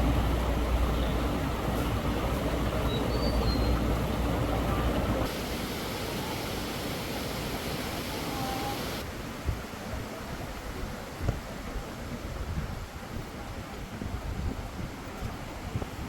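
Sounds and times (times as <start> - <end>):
outdoor rushing hiss: 0.0 - 9.4.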